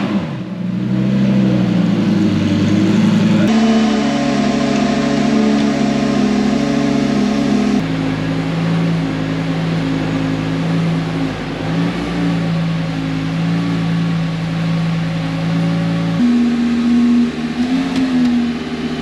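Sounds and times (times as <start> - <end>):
car engine running at held revs: 0.0 - 19.0.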